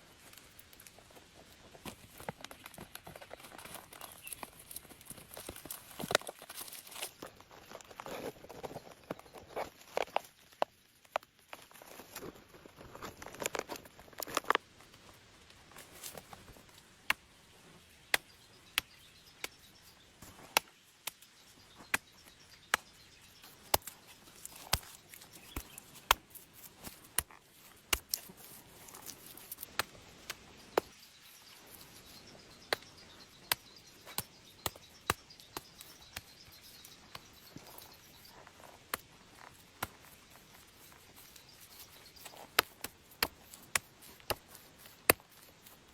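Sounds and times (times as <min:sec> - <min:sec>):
rustling: 0:00.0 - 0:17.9, 0:19.9 - 0:45.9.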